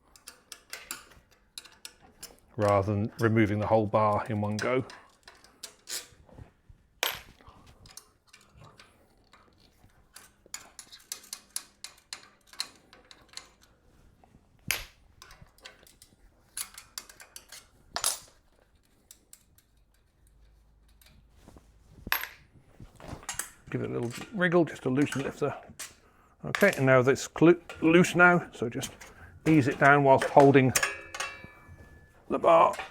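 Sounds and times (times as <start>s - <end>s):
tools clinking on metal bars: 23.2s - 32.9s.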